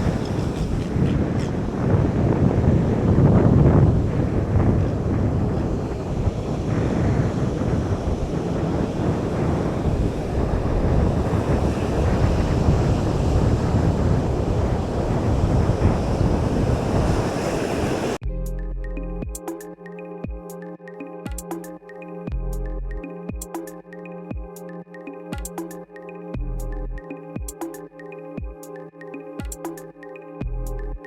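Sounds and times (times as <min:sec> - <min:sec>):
surf washing on a beach: 0:00.0 - 0:18.2
wind buffeting microphone: 0:00.0 - 0:18.2
electronic music: 0:18.2 - 0:31.0.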